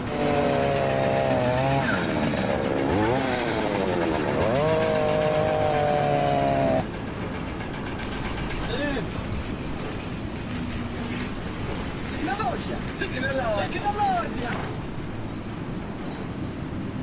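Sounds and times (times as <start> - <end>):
small motor whining: 0.0 - 6.8, 8.0 - 14.6.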